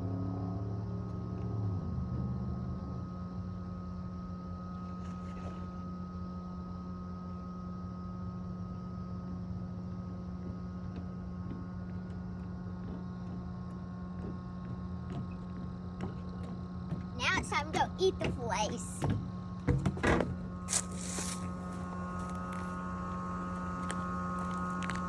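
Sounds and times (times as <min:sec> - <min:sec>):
vehicle engine humming: 0:17.1 - 0:19.6, 0:20.3 - 0:25.0.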